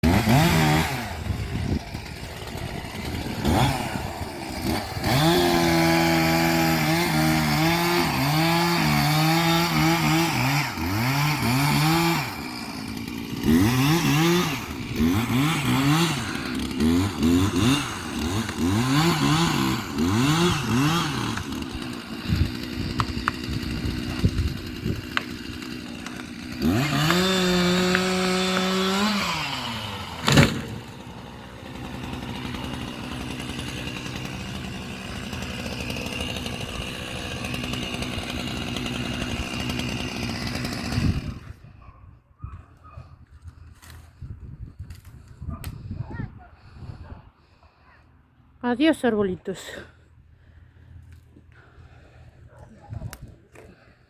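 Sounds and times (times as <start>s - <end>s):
chainsaw engine revving: 0.0s - 41.7s.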